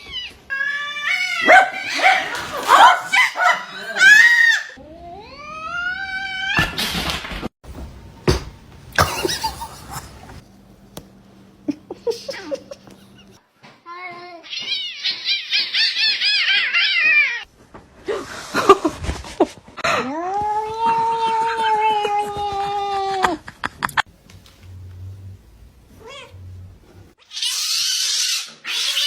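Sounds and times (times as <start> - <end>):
cats meowing and yowling: 0.0 - 6.8, 14.4 - 17.5, 19.9 - 23.3
knocks and thumps: 7.6 - 9.6.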